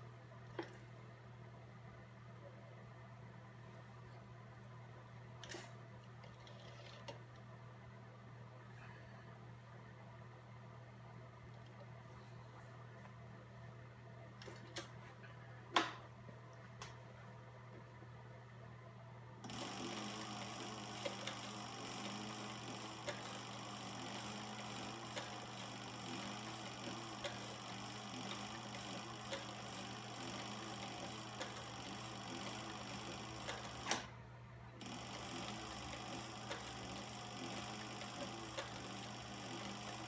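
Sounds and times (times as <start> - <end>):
sewing machine click: 19.4 - 34.1, 34.8 - 40.0
sewing machine stitching: 19.4 - 34.1, 34.8 - 40.0.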